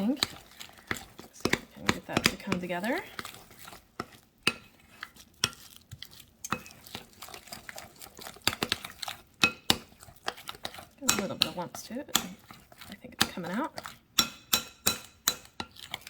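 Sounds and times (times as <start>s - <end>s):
utensil knocking bowl sides: 0.0s - 3.4s, 7.7s - 15.8s
utensil stirring batter in a bowl: 0.0s - 16.0s.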